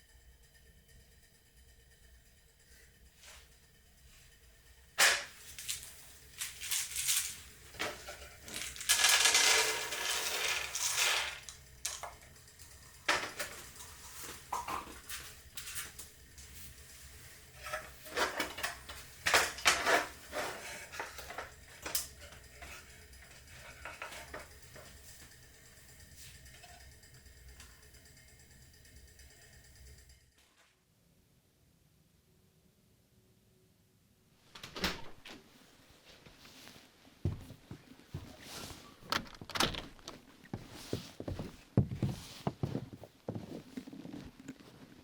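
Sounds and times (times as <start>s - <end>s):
rustling and scraping: 5.0s - 12.2s, 17.5s - 25.0s, 35.3s - 45.0s
objects clinking and knocking: 5.0s - 16.0s, 39.0s - 40.3s.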